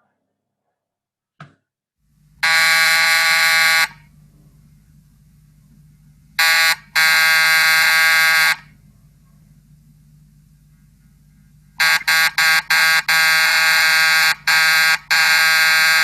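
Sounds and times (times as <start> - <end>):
electric alarm buzzer: 2.4 - 4.1, 6.4 - 8.7, 11.8 - 16.0
low hum: 4.0 - 7.0, 8.6 - 11.8.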